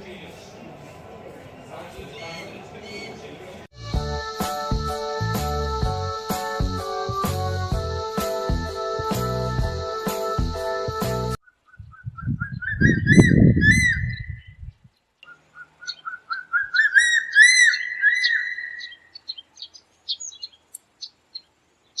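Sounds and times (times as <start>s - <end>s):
eagle whistling calls: 2.1s - 3.2s, 11.7s - 14.6s, 15.2s - 20.6s.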